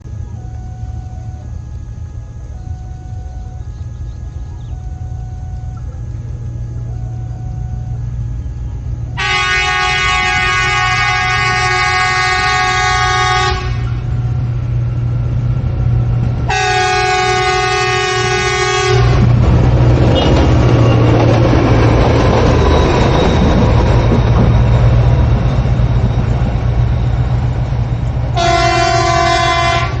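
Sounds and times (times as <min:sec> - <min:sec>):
steady low rumble: 0:00.0 - 0:30.0
train running rushing rumble: 0:00.0 - 0:30.0
train air horn blasts: 0:04.8 - 0:14.2, 0:16.5 - 0:19.4, 0:20.0 - 0:21.0, 0:28.3 - 0:30.0.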